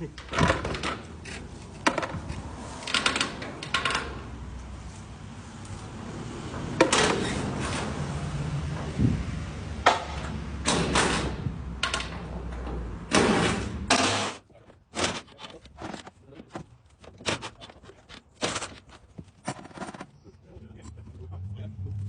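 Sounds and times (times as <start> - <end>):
metal clanks and bangs: 9.8 - 15.4
engine droning: 20.5 - 22.0.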